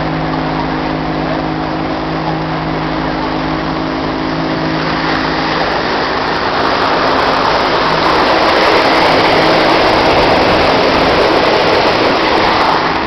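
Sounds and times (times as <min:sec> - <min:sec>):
motorboat engine running: 0:00.0 - 0:13.0
water rushing: 0:00.0 - 0:13.0
wind rushing: 0:02.7 - 0:13.0.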